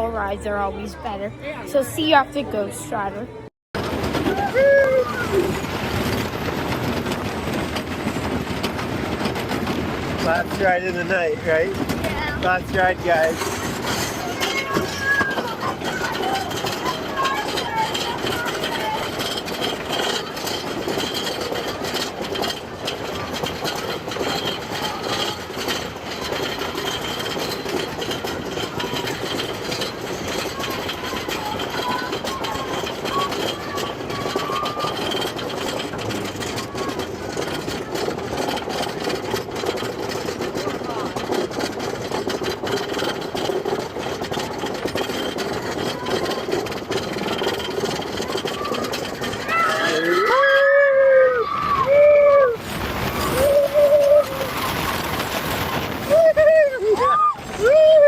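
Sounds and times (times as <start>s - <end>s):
roller coaster clattering on track: 0.0s - 58.0s
rapid rattling clicks: 5.3s - 50.9s.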